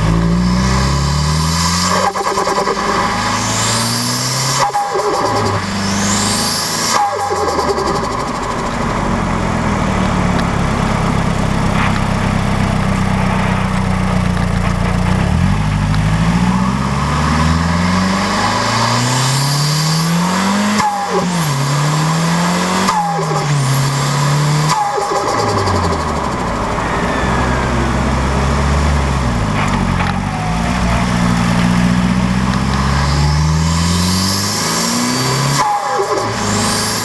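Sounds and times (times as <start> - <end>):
turbocharged engine accelerating: 0.0 - 37.0
high turbo whistle: 0.3 - 8.8, 16.6 - 29.5.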